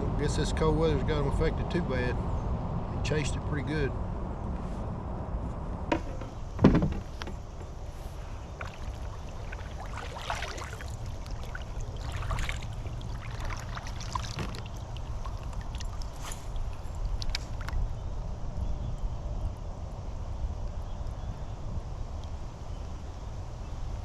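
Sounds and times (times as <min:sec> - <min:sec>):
steady low rumble: 0:00.0 - 0:24.0
knock on kayak hull: 0:05.9 - 0:07.7
thump on kayak hull: 0:05.9 - 0:07.8, 0:14.3 - 0:14.6
water splashing: 0:08.1 - 0:17.9.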